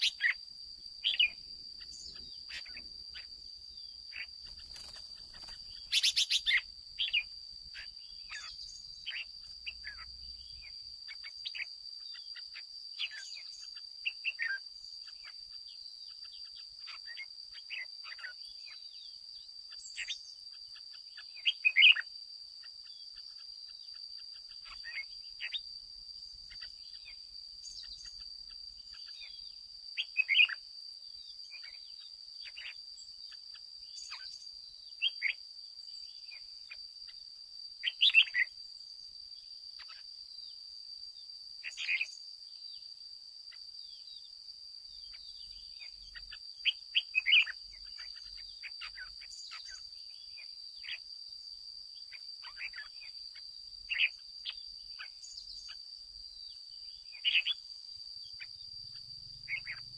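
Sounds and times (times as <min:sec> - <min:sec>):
bird chirping and warbling: 0:00.0 - 0:00.4, 0:01.0 - 0:15.4, 0:21.0 - 0:22.0, 0:24.2 - 0:25.6, 0:28.8 - 0:30.6, 0:37.8 - 0:38.5, 0:41.6 - 0:42.2, 0:44.9 - 0:51.0, 0:52.4 - 0:53.1, 0:53.9 - 0:55.8, 0:56.9 - 0:57.6, 0:58.3 - 0:59.9.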